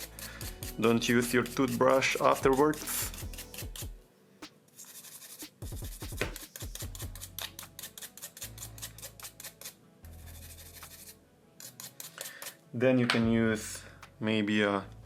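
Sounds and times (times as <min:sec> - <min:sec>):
toothbrush scrubbing: 0:00.0 - 0:04.0, 0:04.8 - 0:12.6.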